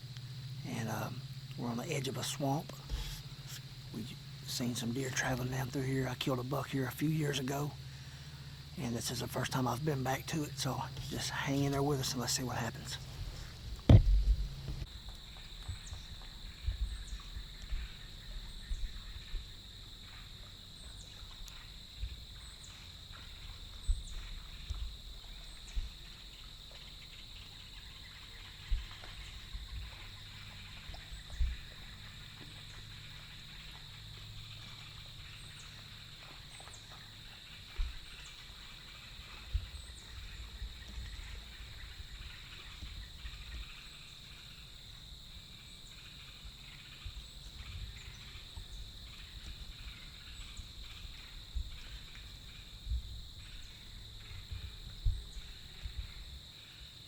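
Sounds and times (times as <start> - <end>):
crickets droning: 0.0 - 57.0
thumps on microphone: 13.2 - 14.9.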